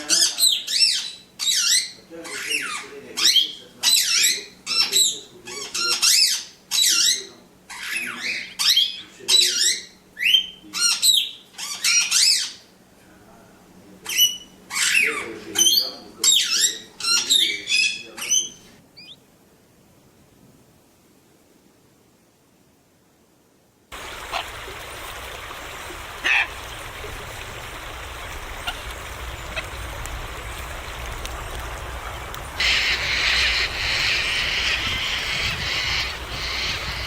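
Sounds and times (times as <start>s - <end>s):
parrot harsh calls: 0.1s - 12.7s, 14.1s - 19.2s, 26.1s - 26.7s, 32.6s - 37.0s.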